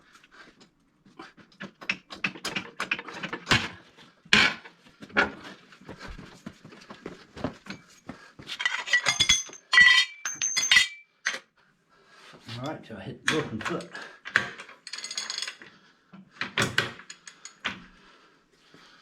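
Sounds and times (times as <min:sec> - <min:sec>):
metal tools clanking: 0:08.6 - 0:11.4.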